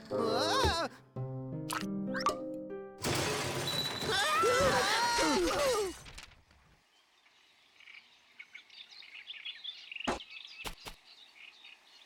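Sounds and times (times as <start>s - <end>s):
faint birdsong chirping: 6.8s - 12.0s.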